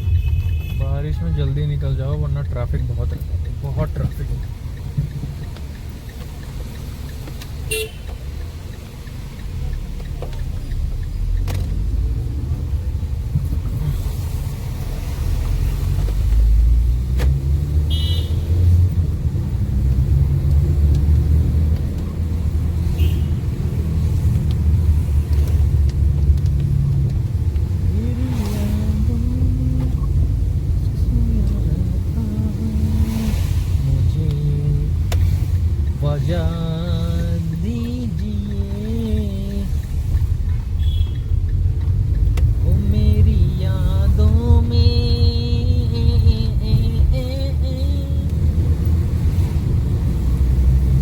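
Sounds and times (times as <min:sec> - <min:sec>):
car horn toots: 0:00.0 - 0:01.6, 0:07.6 - 0:08.3, 0:17.8 - 0:18.6, 0:22.9 - 0:23.6, 0:40.5 - 0:41.3
car engine and road rumble: 0:00.0 - 0:51.0.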